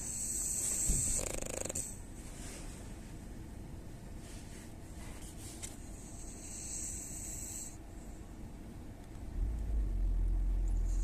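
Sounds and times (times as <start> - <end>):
snoring: 0.0 - 2.0, 6.2 - 7.8
loud low rumble: 9.3 - 11.0.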